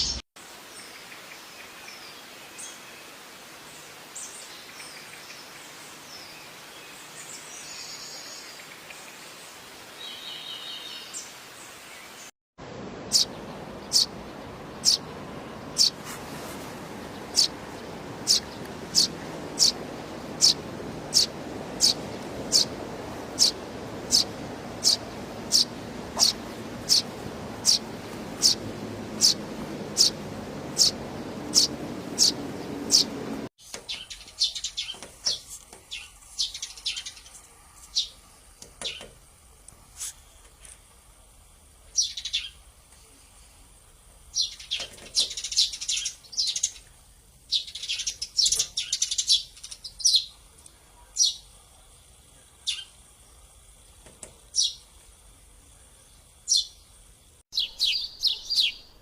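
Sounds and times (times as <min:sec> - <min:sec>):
sparrow chirping: 0:13.1 - 0:14.1, 0:14.7 - 0:15.1, 0:15.7 - 0:16.0, 0:17.2 - 0:33.3, 0:56.5 - 0:56.7, 0:57.5 - 0:59.0
background hiss: 0:33.3 - 0:59.0.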